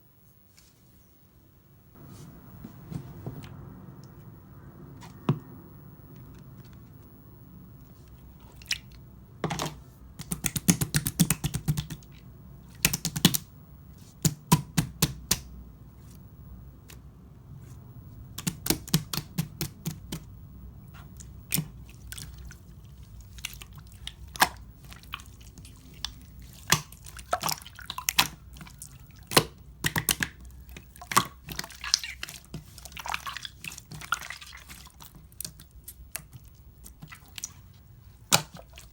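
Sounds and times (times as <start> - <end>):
slime squished by hand: 21.2 - 38.9.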